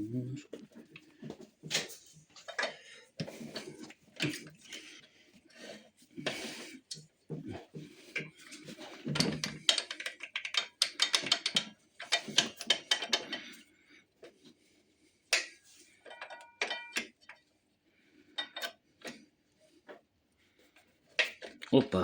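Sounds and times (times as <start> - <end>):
tools and metal parts clinking: 8.4 - 13.6, 15.4 - 17.4.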